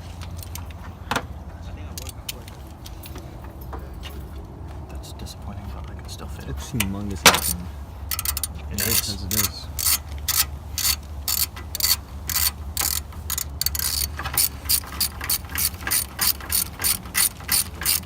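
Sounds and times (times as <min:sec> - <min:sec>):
socket ratchet clicking: 0:07.3 - 0:18.0.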